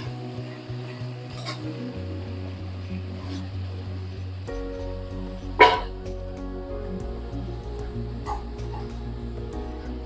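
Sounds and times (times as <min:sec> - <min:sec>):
background music with low beat: 0:00.0 - 0:10.0.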